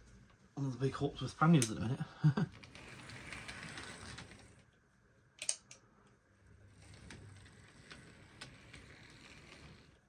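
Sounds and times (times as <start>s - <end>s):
model train motor whir: 2.7s - 4.6s, 6.7s - 10.0s.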